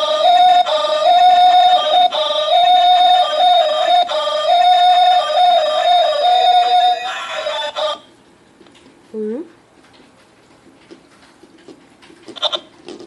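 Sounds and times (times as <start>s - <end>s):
toy playing electronic beeping tune: 0.0s - 8.0s.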